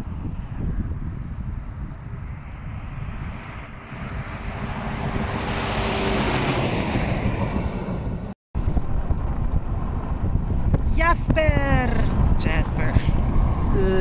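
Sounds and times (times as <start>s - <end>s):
road and wind noise: 0.0s - 14.0s
heavy low rumble: 6.7s - 14.0s.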